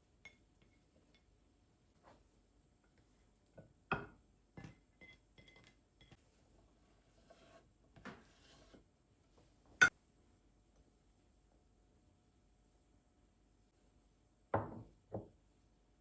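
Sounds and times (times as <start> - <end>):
objects knocking and tapping: 3.6 - 6.2, 14.6 - 15.4.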